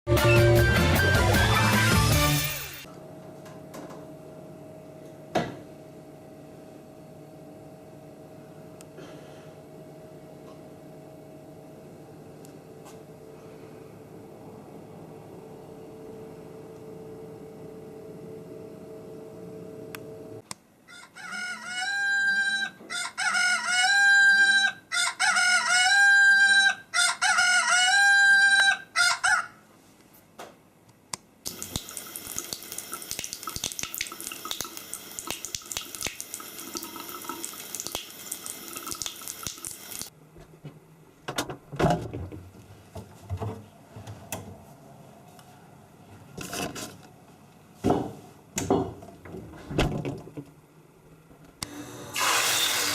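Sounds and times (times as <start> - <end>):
tap water running into sink: 31.5 - 40.1.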